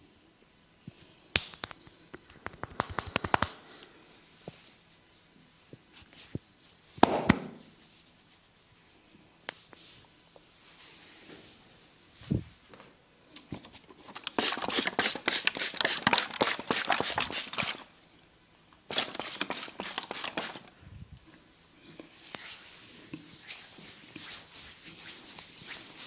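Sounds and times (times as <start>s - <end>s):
hands rubbing and scratching hair: 1.3s - 6.8s, 9.4s - 12.6s, 13.7s - 17.9s, 18.9s - 20.7s, 22.0s - 26.0s.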